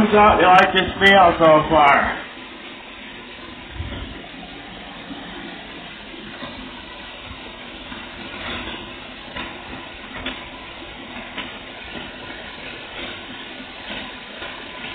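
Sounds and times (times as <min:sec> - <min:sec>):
shower water spraying: 0:00.0 - 0:14.9.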